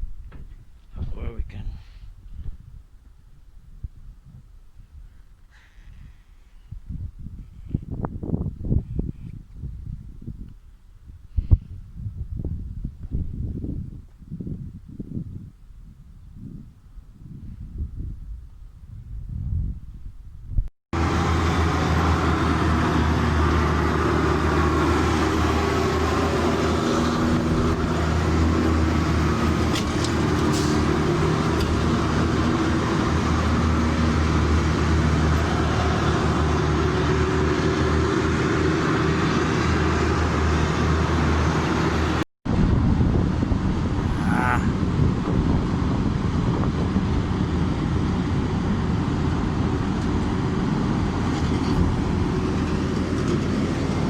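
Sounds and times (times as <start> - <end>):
excavator diesel engine running: 21.0 - 42.2, 45.7 - 54.0.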